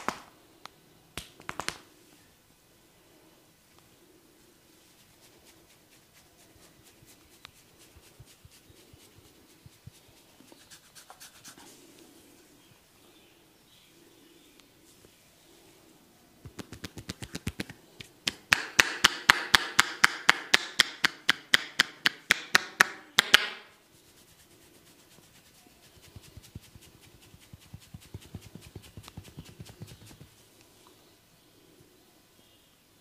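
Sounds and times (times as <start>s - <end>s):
hands striking head: 16.4s - 23.7s.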